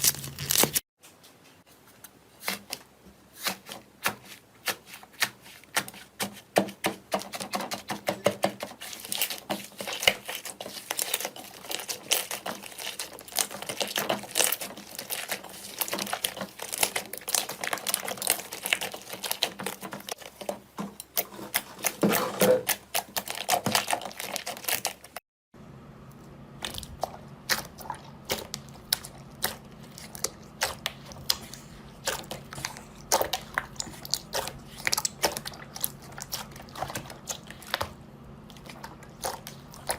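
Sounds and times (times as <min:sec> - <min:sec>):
steady low hum: 0:25.6 - 0:39.9.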